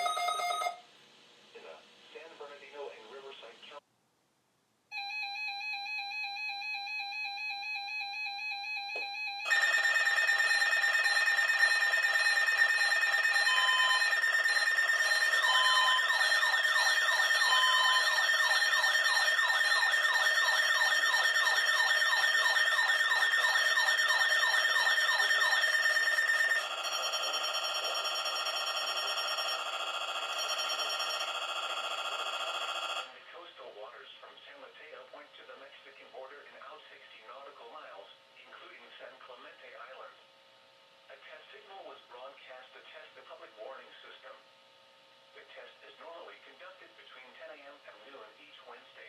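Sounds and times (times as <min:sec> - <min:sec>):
pulsing alarm tone: 0:00.0 - 0:00.8, 0:04.9 - 0:33.1
warbling siren: 0:00.0 - 0:00.8, 0:05.0 - 0:33.1
loud steady alarm tone: 0:00.0 - 0:00.9, 0:04.9 - 0:33.1.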